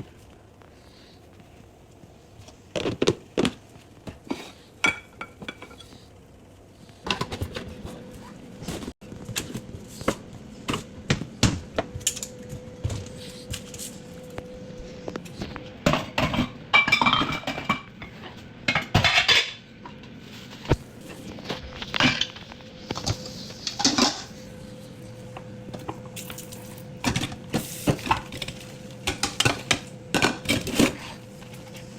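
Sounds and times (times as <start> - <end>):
faint steady hum: 0.0 - 31.9
utensils clinking on pots and plates: 4.3 - 5.9, 15.8 - 20.0, 23.6 - 24.4, 25.8 - 31.2.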